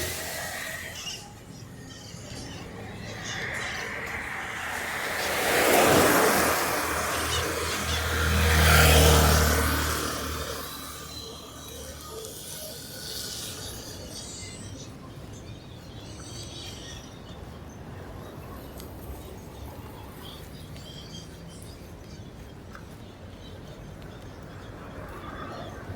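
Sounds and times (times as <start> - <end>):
car passing: 0.0 - 14.1.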